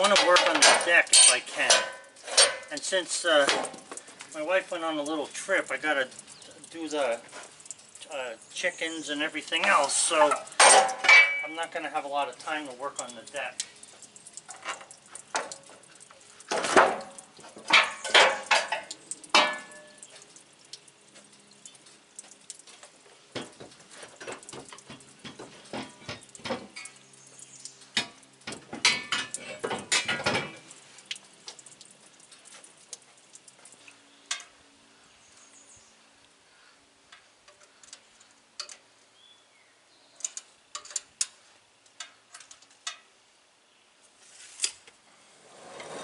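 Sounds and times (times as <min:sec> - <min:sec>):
clattering of hard objects: 0:00.0 - 0:05.4, 0:09.5 - 0:20.4, 0:22.2 - 0:27.1, 0:27.8 - 0:34.5.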